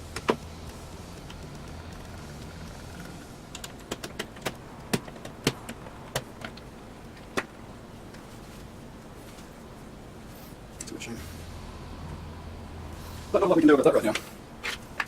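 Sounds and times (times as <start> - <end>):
small hard parts clicking: 0.0 - 7.5
steady low hum: 0.0 - 15.0.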